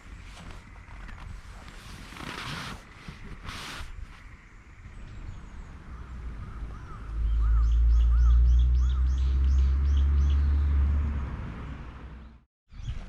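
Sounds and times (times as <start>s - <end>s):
bird calling: 3.0s - 10.6s.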